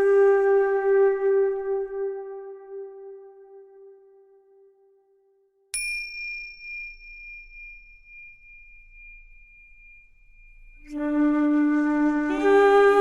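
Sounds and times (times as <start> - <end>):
struck bell ringing: 5.8 - 10.9
flute-like held note: 10.8 - 13.0.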